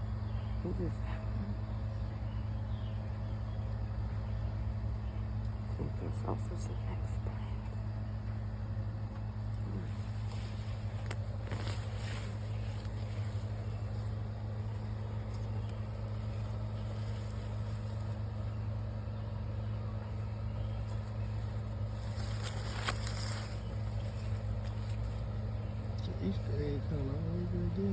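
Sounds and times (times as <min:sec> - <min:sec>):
low mechanical hum: 0:00.0 - 0:27.9
faint rustles and scrapes: 0:09.5 - 0:18.9, 0:20.1 - 0:26.0.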